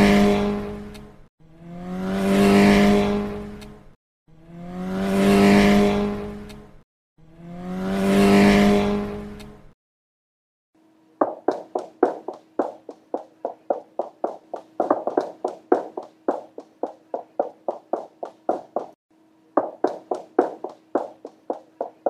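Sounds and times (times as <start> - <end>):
quick tapping steps: 11.2 - 19.0, 19.6 - 22.0.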